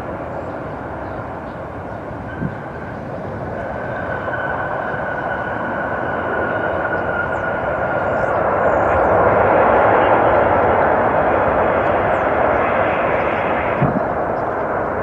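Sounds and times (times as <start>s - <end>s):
jet engines whining: 0.0s - 15.0s.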